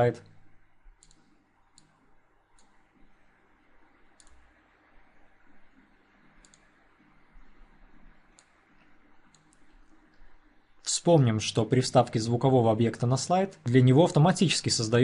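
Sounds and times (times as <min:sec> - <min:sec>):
low room hum: 0:00.0 - 0:15.0
computer mouse clicks: 0:01.0 - 0:02.9, 0:04.1 - 0:04.6, 0:05.8 - 0:06.9, 0:08.3 - 0:09.7.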